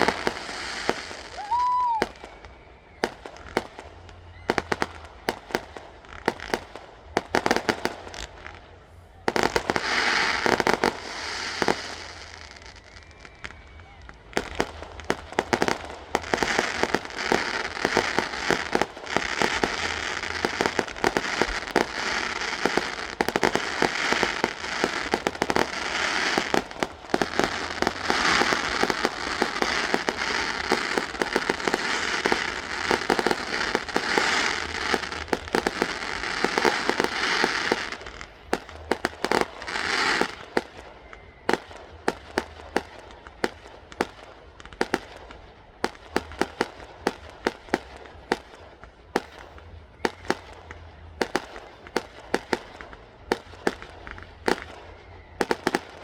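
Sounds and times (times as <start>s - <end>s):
fireworks bangs: 0.0s - 56.0s
fireworks crackle: 0.0s - 56.0s.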